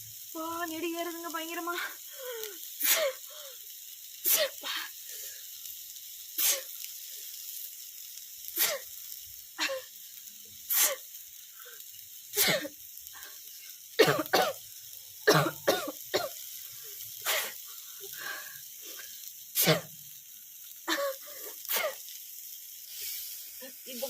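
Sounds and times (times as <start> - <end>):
frying sizzle: 0.0 - 24.0
person coughing: 12.4 - 12.7, 14.0 - 14.6, 15.3 - 16.4, 19.6 - 19.9, 20.9 - 22.0.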